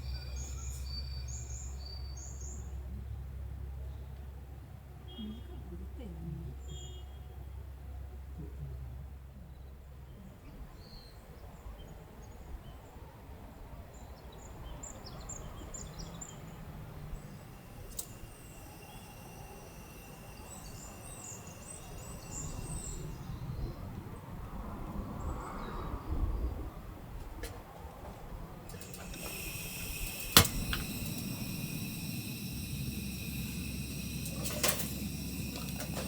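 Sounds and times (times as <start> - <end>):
small birds chirping: 14.1 - 23.8, 28.7 - 36.0
faint steady high tone: 17.0 - 23.7, 28.7 - 36.0.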